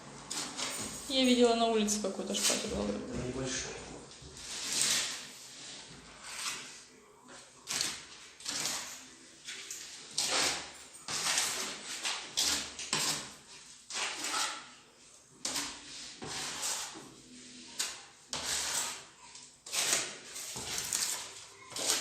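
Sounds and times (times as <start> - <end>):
spatula scraping plaster on wall: 0.3 - 0.7, 2.3 - 3.0, 4.3 - 6.9, 7.6 - 14.8, 15.4 - 22.0.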